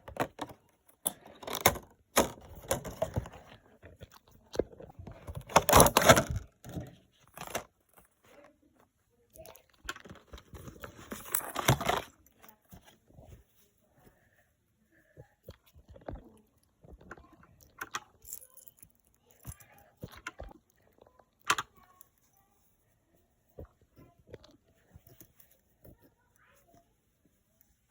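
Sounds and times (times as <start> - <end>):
packaging crinkling and tearing: 5.2 - 7.7, 10.0 - 12.2.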